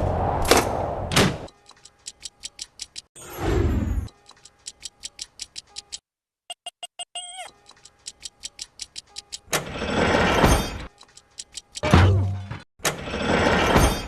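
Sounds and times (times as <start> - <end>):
rapid clock-like ticking: 1.5 - 3.1, 4.1 - 6.0, 7.5 - 9.5, 10.9 - 11.9.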